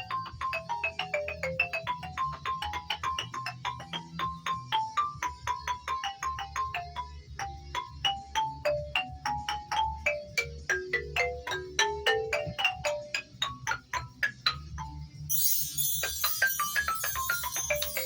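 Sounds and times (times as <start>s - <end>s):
pitched percussion melody: 0.0s - 18.0s.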